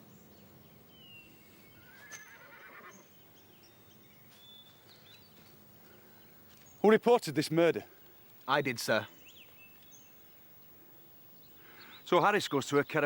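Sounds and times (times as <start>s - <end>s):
horse whinnying faintly: 1.8s - 3.0s.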